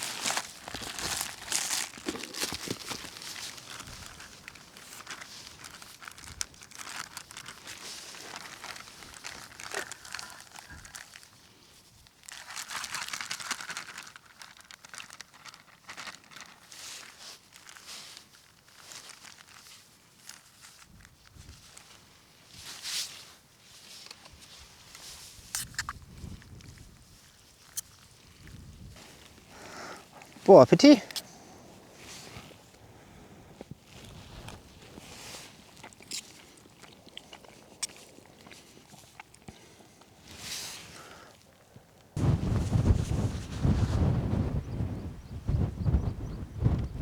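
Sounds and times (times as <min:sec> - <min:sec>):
plastic packaging crinkling: 0:00.0 - 0:11.4, 0:12.2 - 0:22.0.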